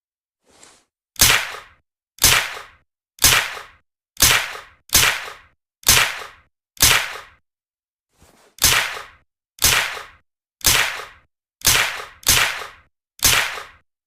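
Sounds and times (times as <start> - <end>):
suppressed gunshots: 8.6 - 13.8.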